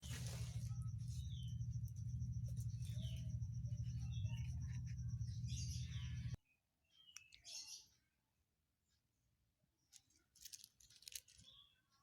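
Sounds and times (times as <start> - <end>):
birds chirping: 0.0 - 6.4
steady low hum: 0.0 - 6.4.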